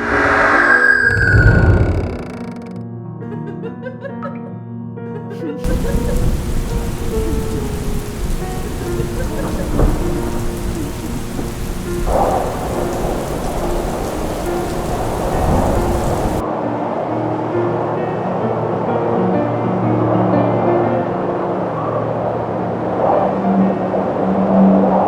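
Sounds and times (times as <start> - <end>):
thunder rumbles: 1.1 - 2.2, 5.6 - 16.4
heavy rain: 1.1 - 2.7, 5.6 - 16.4.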